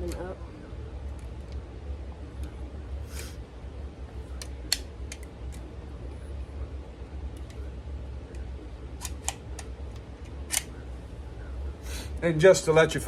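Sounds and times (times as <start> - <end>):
steady low hum: 0.0 - 13.0
pistol parts clicking: 4.4 - 5.6, 9.0 - 10.7.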